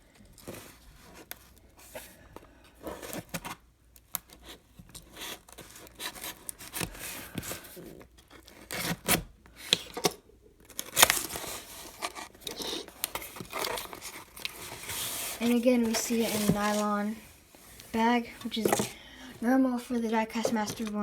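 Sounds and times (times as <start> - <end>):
cardboard tearing and rubbing: 10.8 - 18.9.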